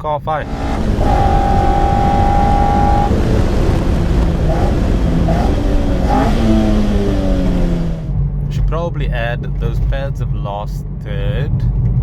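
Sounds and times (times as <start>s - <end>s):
car engine and road noise: 0.0s - 12.0s
held tone: 0.4s - 3.9s.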